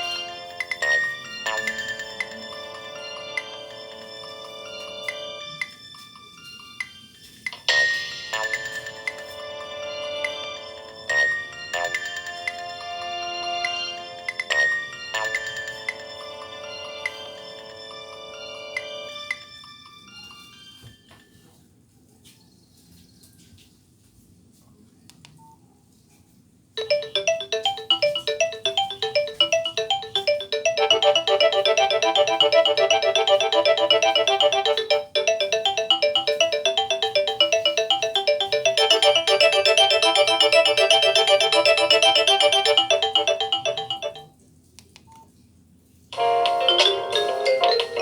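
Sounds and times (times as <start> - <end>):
polyphonic phone ringtone: 26.8 - 44.3.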